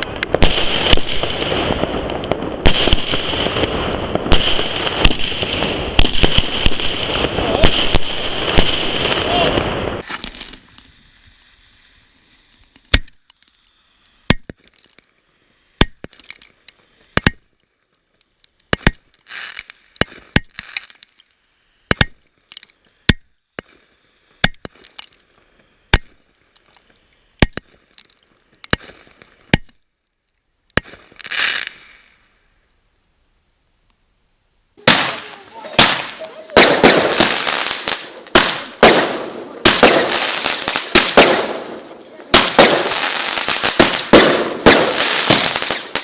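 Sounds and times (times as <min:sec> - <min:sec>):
firework bangs: 0:00.0 - 0:11.4, 0:34.8 - 0:46.0
crackling hissing firework bursts: 0:00.0 - 0:46.0.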